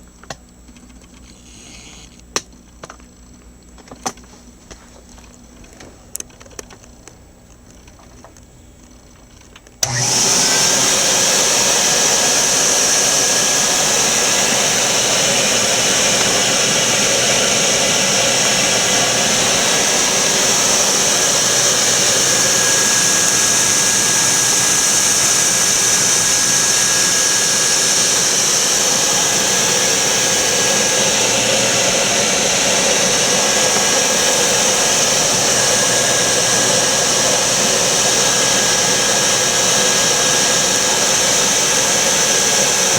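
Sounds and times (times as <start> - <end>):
vacuum cleaner running: 9.8 - 42.9.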